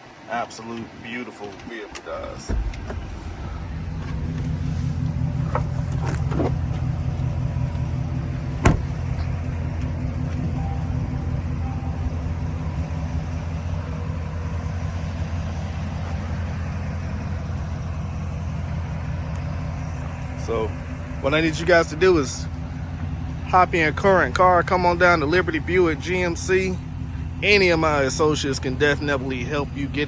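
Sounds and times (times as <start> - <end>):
truck engine idling: 0.0 - 30.0.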